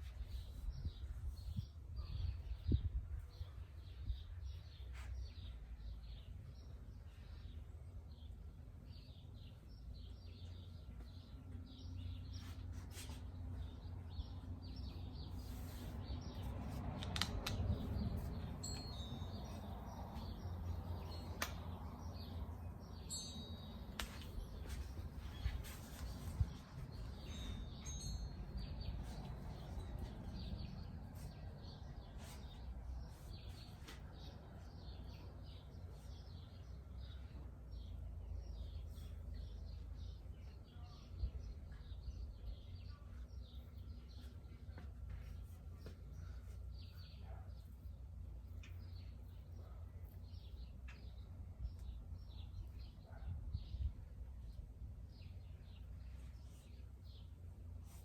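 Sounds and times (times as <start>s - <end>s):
steady low rumble: 13.3s - 35.4s
sharp clicks: 17.0s - 17.8s.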